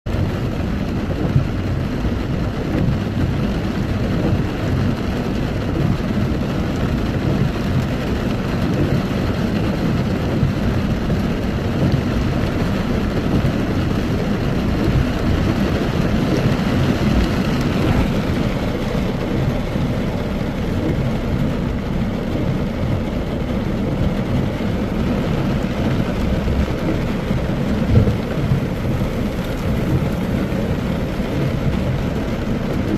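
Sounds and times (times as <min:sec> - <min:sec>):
heavy rain falling: 0:00.1 - 0:32.9
low rumble: 0:10.3 - 0:32.9.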